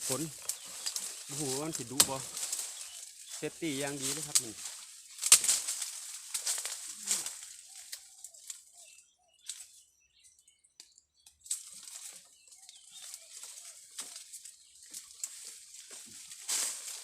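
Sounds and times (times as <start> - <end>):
leaves and twigs rustling: 0.0 - 17.0
faint bird chirps: 6.0 - 16.4.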